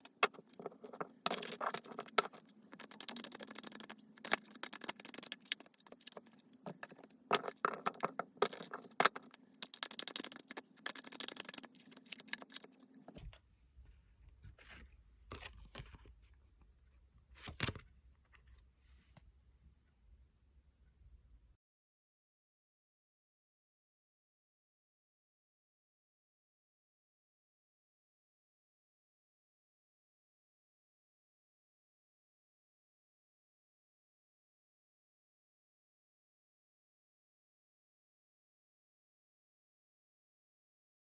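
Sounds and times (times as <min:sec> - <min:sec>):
cards shuffling: 0:00.0 - 0:12.8.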